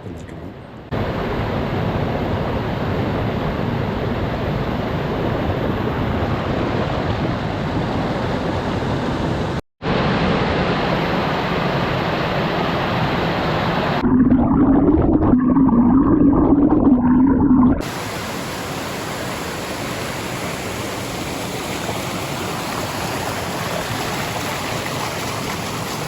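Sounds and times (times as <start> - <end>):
waterfall roaring: 17.8 - 26.0.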